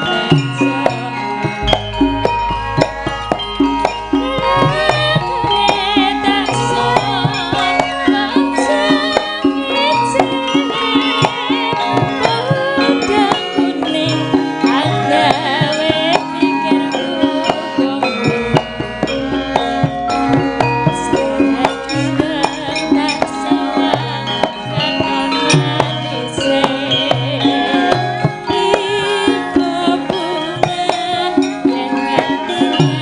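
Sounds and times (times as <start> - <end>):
drum strokes: 0.0 - 33.0
metallophone tones: 0.0 - 33.0.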